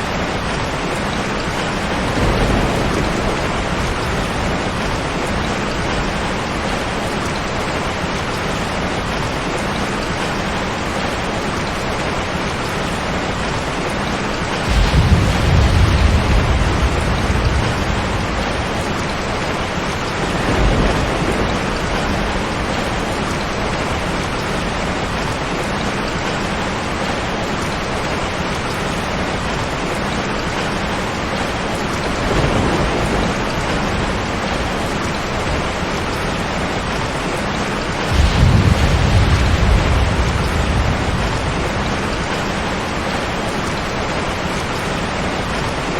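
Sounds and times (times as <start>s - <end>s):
heavy rain on a tin roof: 0.0s - 45.9s
thunder rumbling: 0.1s - 9.2s, 14.4s - 25.6s, 31.6s - 45.8s.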